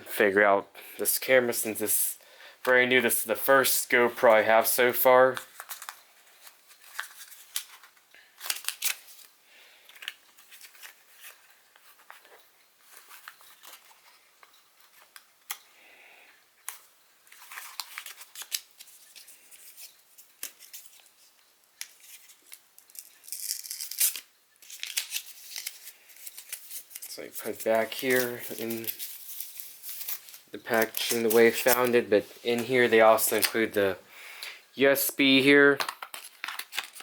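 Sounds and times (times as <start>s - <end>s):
packaging rustling: 5.2s - 15.6s, 16.6s - 33.8s, 35.8s - 37.0s
plastic packaging clicks and taps: 35.8s - 37.0s.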